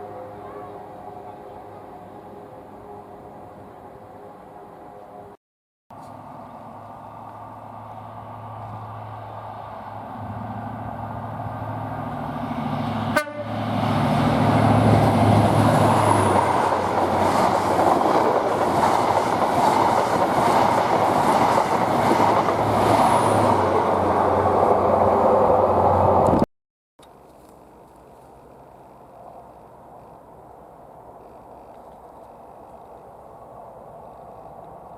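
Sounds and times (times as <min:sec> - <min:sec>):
diesel train passing: 0:00.0 - 0:05.4, 0:06.0 - 0:26.4
wheels rushing on rails: 0:05.9 - 0:26.4, 0:27.0 - 0:34.9.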